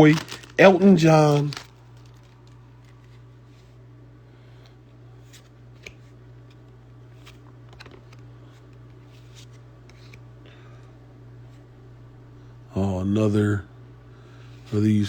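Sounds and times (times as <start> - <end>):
trading cards being flipped: 0.0 - 3.2, 5.3 - 10.2
steady low hum: 0.0 - 15.0.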